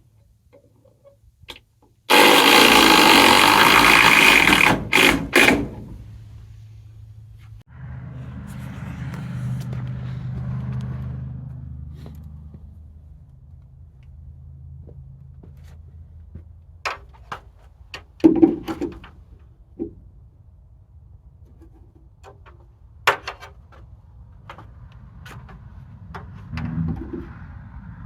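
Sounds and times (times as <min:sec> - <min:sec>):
sharp knocks and clanks: 0:00.5 - 0:06.1, 0:16.3 - 0:20.0, 0:21.5 - 0:27.6
engine running: 0:02.1 - 0:17.4, 0:23.6 - 0:28.0.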